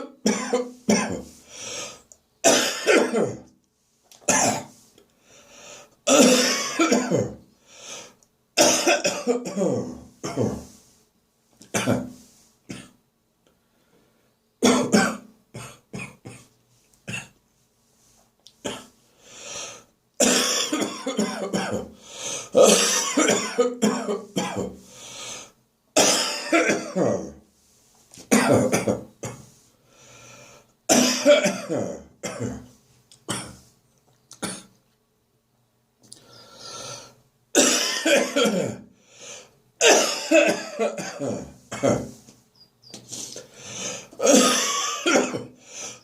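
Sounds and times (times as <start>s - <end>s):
person clearing throat: 0.0s - 1.4s, 2.4s - 3.5s, 4.2s - 4.7s, 6.1s - 7.4s, 8.6s - 10.7s, 11.6s - 13.0s, 14.6s - 17.4s, 18.7s - 18.9s, 20.2s - 24.8s, 26.0s - 27.4s, 28.3s - 29.5s, 30.9s - 32.7s, 33.3s - 33.6s, 34.4s - 34.8s, 37.6s - 38.9s, 39.8s - 42.2s, 44.1s - 45.6s
person coughing: 0.0s - 1.4s, 2.4s - 3.5s, 4.2s - 4.7s, 6.1s - 7.4s, 8.6s - 10.7s, 11.7s - 12.1s, 14.6s - 16.5s, 18.7s - 18.9s, 20.2s - 24.8s, 26.0s - 27.4s, 28.3s - 29.4s, 30.9s - 32.7s, 33.3s - 33.6s, 34.4s - 34.7s, 37.6s - 38.9s, 39.8s - 42.2s, 43.2s - 45.6s.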